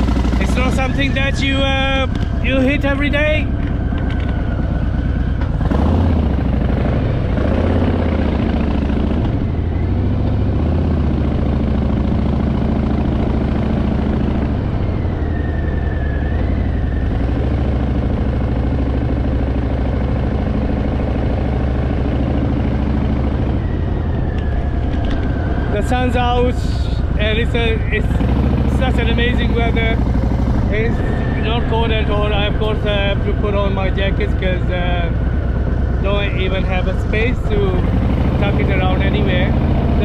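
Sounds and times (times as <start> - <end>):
motorcycle engine revving: 0.0 - 40.0.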